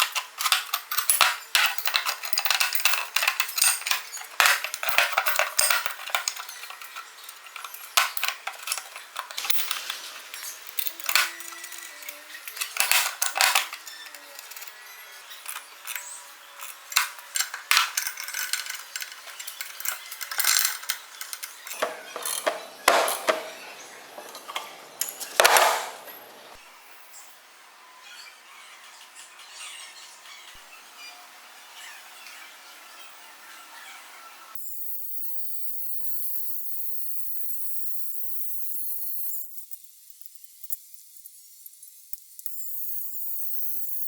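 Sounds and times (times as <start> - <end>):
metal tools clinking on workbench: 0.0 - 26.6.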